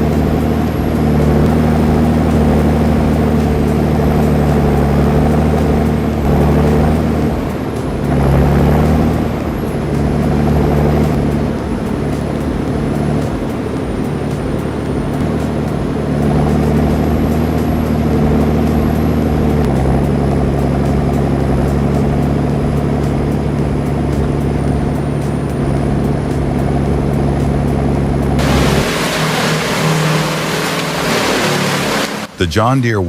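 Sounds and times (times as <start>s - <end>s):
stump grinder engine: 28.4s - 32.3s.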